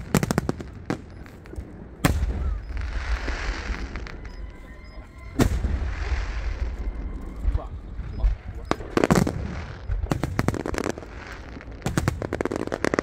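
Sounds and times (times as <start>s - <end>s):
low rumble: 0.0s - 12.3s
crackling hiss: 0.0s - 13.0s
firework burst: 0.0s - 13.0s
firework pops: 8.7s - 13.0s.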